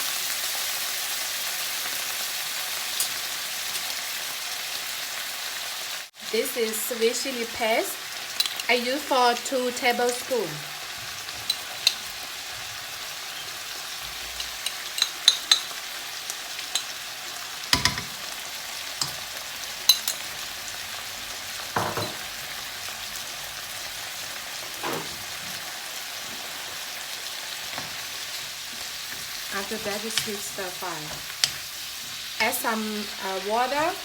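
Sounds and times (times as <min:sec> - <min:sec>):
food sizzling in a pan: 0:00.0 - 0:34.0.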